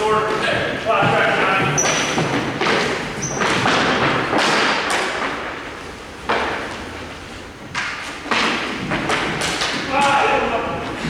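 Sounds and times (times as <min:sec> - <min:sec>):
puck and sticks striking boards: 0:01.0 - 0:05.7, 0:06.3 - 0:06.8, 0:07.7 - 0:10.5.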